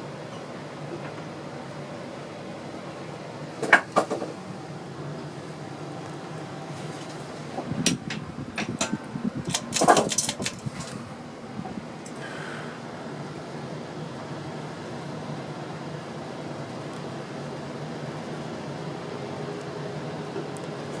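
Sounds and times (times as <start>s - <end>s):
ceiling fan humming: 0.0s - 21.0s
sharp clicks and knocks: 7.6s - 11.0s.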